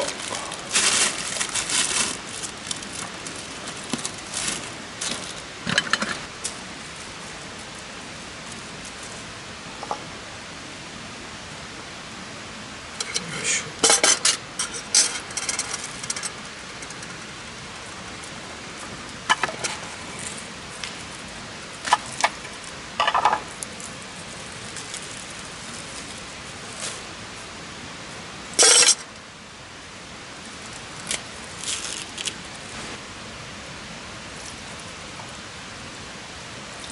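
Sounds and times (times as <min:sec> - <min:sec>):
steady hiss: 0:00.0 - 0:36.9
dishes and utensils clinking: 0:13.8 - 0:16.4, 0:28.6 - 0:29.1.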